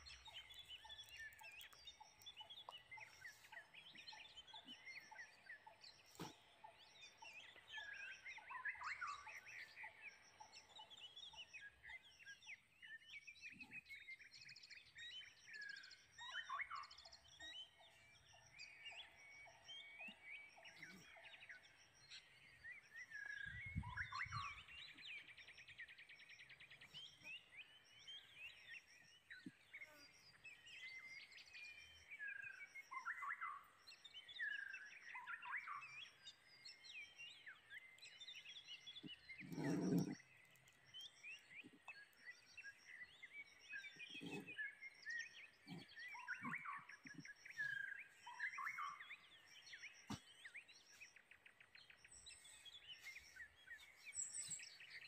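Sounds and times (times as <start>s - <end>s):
birds chirping and whistling: 15.0s - 40.2s, 40.9s - 55.0s.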